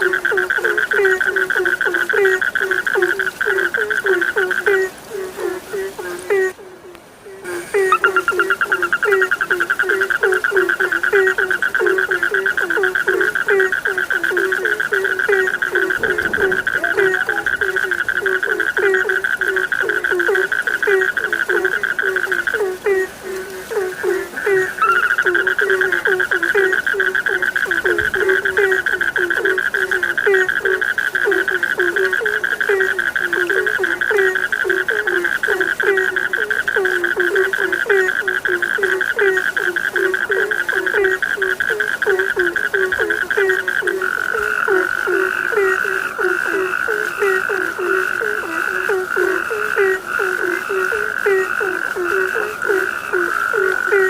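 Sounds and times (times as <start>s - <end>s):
frogs croaking: 0.0s - 54.0s
high frog trill: 7.5s - 22.6s, 24.5s - 34.8s.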